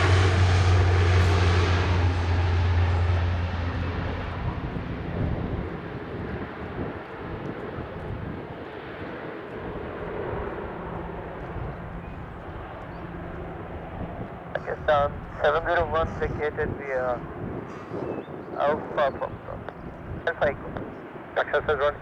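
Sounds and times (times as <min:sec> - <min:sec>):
low steady hum: 0:00.0 - 0:06.7
jet engines: 0:00.0 - 0:22.0.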